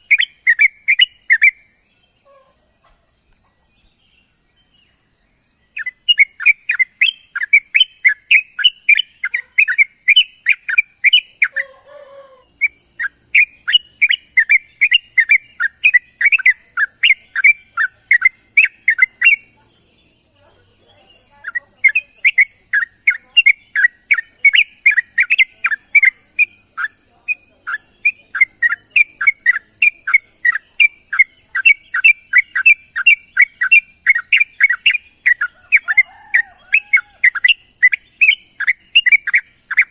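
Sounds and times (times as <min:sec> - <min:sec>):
bulbul chirping: 0:00.0 - 0:04.9, 0:05.6 - 0:39.9
steady high hiss: 0:00.0 - 0:11.6.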